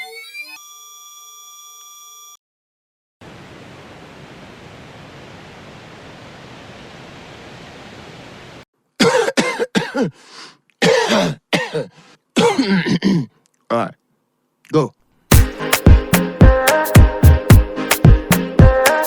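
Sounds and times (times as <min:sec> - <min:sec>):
person coughing: 0:09.0 - 0:10.2, 0:10.8 - 0:13.4.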